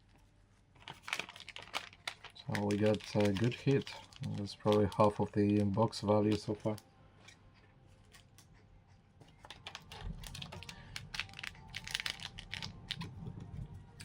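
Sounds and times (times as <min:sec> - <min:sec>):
packaging crinkling: 0:00.8 - 0:06.8, 0:09.4 - 0:14.0.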